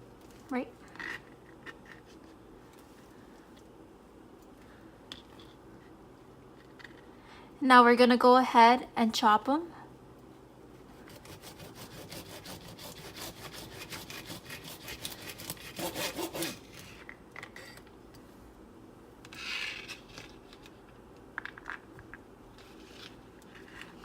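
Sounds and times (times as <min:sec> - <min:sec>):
knife scrape: 0:11.0 - 0:17.0.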